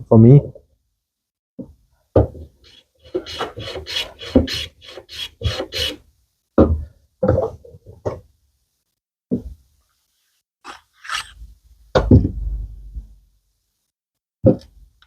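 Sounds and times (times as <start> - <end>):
hand plane shaving wood: 2.7 - 6.0, 10.6 - 11.4.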